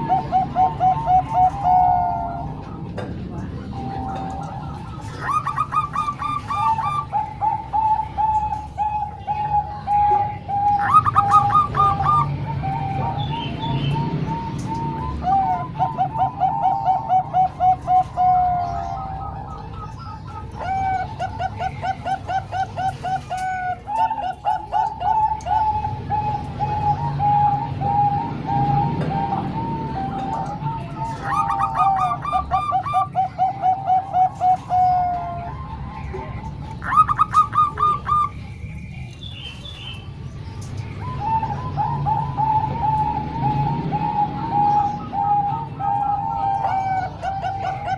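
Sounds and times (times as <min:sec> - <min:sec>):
doves cooing: 0:00.0 - 0:47.9
higher-pitched bird calling: 0:03.7 - 0:40.0.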